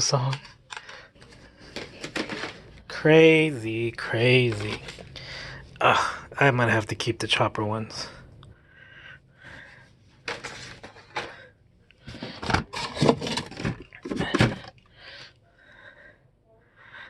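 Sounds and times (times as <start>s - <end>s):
plastic packaging rustling: 0.2s - 2.8s, 10.2s - 11.4s, 12.0s - 14.8s.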